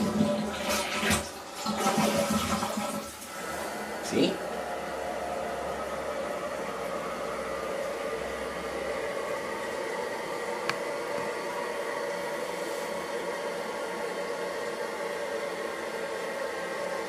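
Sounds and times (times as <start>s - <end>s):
water running into toilet tank: 0.0s - 12.2s.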